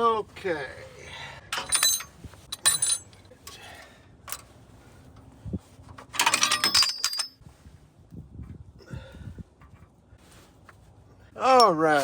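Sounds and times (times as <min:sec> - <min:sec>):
metal tools clinking and rattling: 0:01.5 - 0:03.6, 0:06.1 - 0:07.4, 0:11.5 - 0:12.0.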